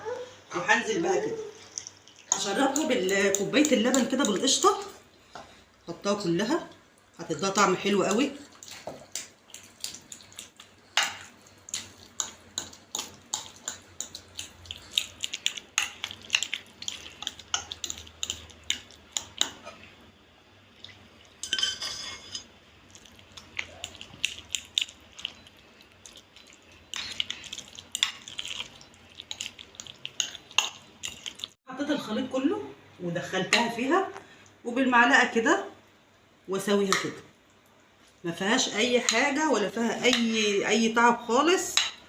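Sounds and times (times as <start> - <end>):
spoon scraping a dish: 21.4 - 22.5.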